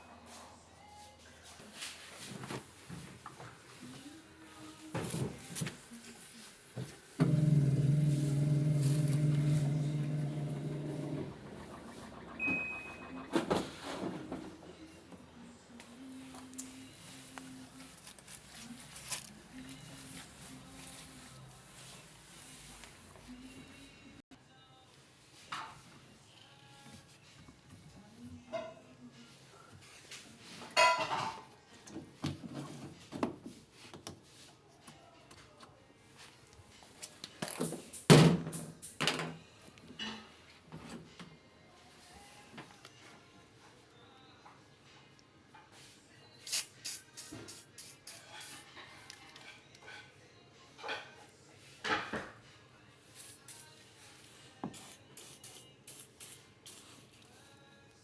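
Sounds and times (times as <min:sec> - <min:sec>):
washing machine motor humming: 0:07.2 - 0:13.4.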